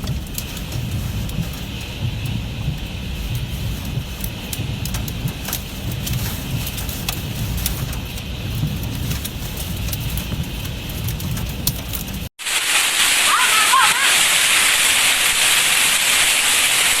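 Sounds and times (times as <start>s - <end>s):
wind rumble on microphone: 0.0s - 12.3s
hailstones striking hard surfaces: 0.0s - 17.0s
heavy rain hissing: 0.0s - 17.0s.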